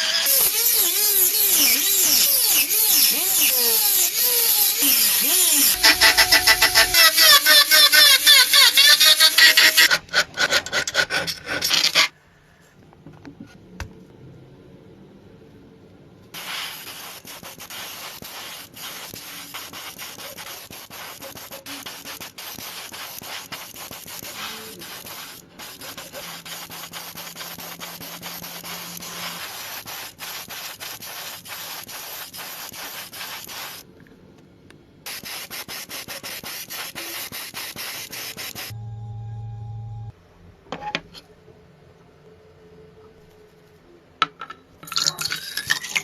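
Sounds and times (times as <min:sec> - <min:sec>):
sanding rasp: 0:00.2 - 0:12.1, 0:17.0 - 0:33.5.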